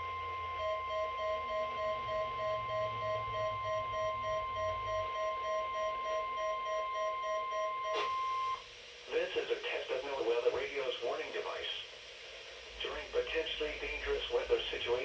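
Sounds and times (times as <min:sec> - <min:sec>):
lower pulsing beep: 0:00.0 - 0:08.6
steady high alarm tone: 0:00.0 - 0:08.6.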